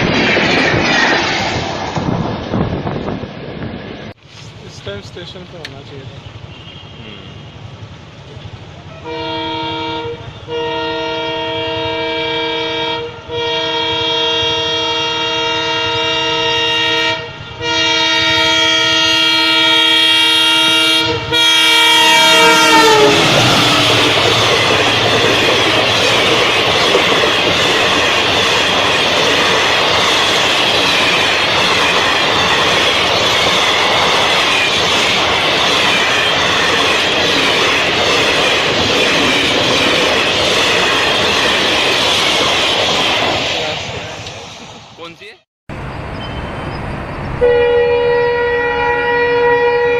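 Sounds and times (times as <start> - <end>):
train wheels clickety-clack: 4.6 - 6.1, 22.7 - 44.6
locomotive horn blasts: 6.4 - 7.5, 8.9 - 24.0, 47.4 - 49.9.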